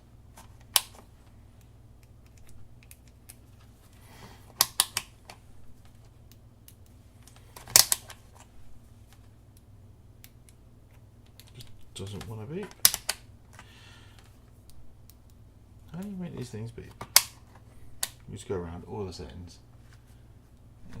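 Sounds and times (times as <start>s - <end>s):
multimeter probes clicking: 0.4s - 3.7s, 4.5s - 8.2s, 9.5s - 16.2s.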